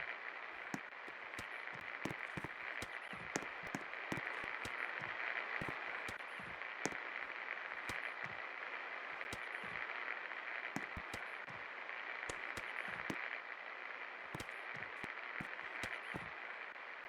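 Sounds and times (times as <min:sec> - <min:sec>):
clicks and crackles: 0:00.4 - 0:17.0.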